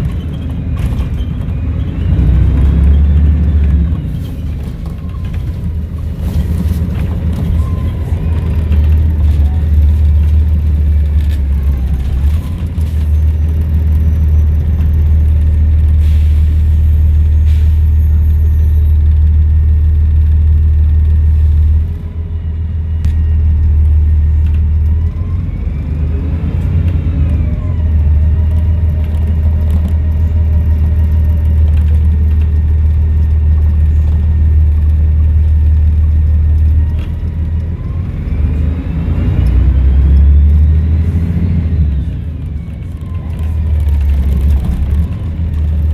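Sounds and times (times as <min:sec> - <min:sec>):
bus diesel engine rumbling: 0:00.0 - 0:45.9.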